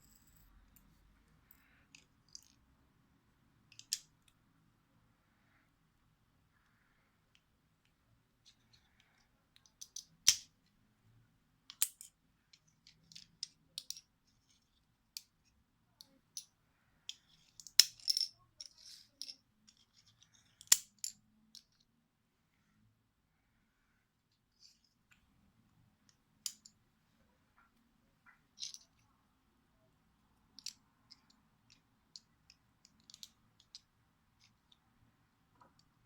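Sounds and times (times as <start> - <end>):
plastic pieces clicking and rattling: 3.7 - 4.3, 30.6 - 34.6.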